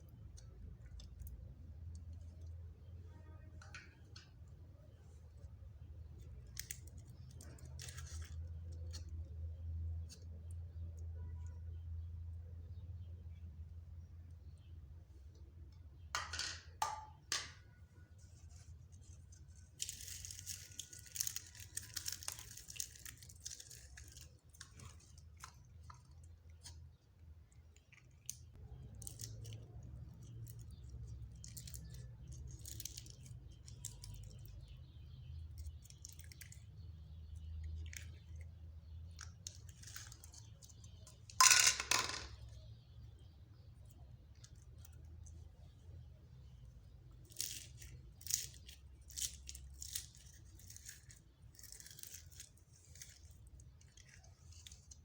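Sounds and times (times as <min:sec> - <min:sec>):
slime squishing and crackling: 0:05.4 - 0:10.9, 0:18.2 - 0:41.4, 0:42.7 - 0:55.0.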